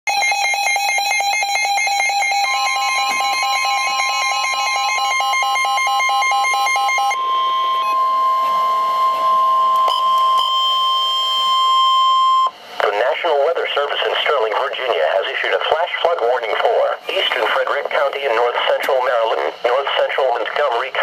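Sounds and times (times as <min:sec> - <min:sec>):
rapid pulsing alarm beeps: 0:00.1 - 0:12.6
steady alarm tone: 0:00.1 - 0:12.8.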